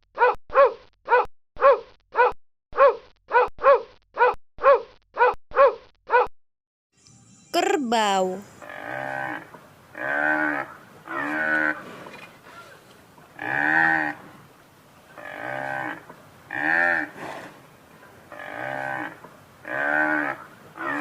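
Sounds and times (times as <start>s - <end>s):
water buffalo mooing: 8.6s - 14.4s, 15.2s - 17.6s, 18.3s - 21.0s.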